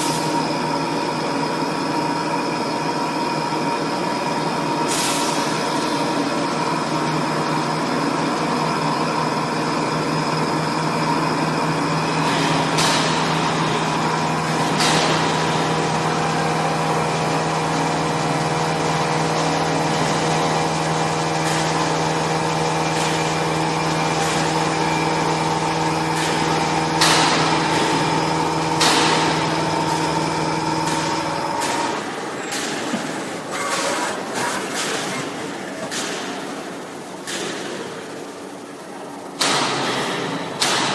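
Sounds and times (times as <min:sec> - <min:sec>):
machining center motor hum and whine: 0:00.0 - 0:40.9
sharp mechanical noises: 0:30.8 - 0:38.0.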